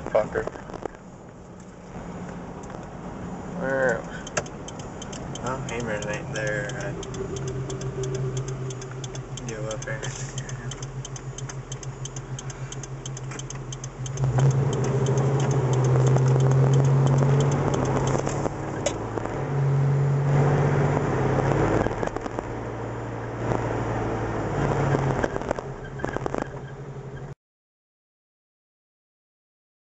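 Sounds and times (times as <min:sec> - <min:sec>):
car pulling away: 0:01.6 - 0:27.3
car engine idling with ticking: 0:03.6 - 0:19.3.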